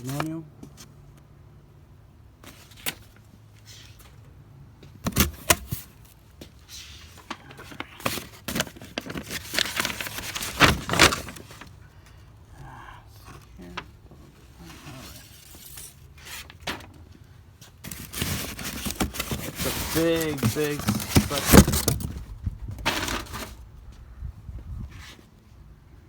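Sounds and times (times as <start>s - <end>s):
packaging rustling and crinkling: 7.2s - 11.8s, 17.7s - 22.3s.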